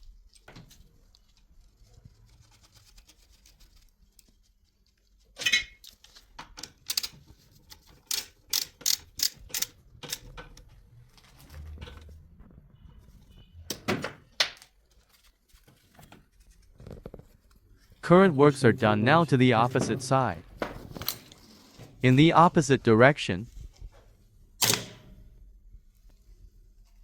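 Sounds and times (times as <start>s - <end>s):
metallic clicks and knocks of tools: 5.4s - 10.7s.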